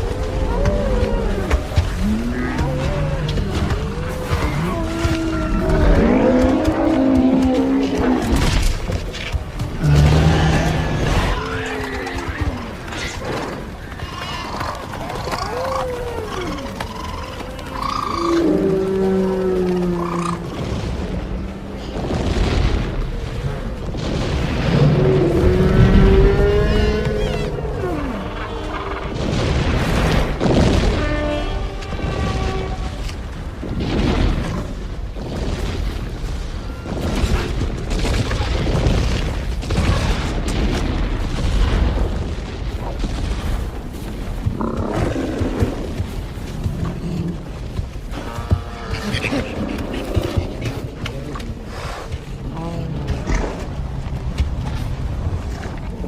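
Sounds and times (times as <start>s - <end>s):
booms: 20.2s - 56.0s.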